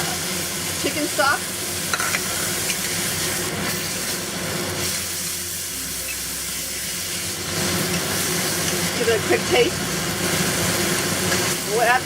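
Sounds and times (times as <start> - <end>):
stir-fry hissing in a pan: 0.0 - 12.0
low hum: 4.9 - 8.8.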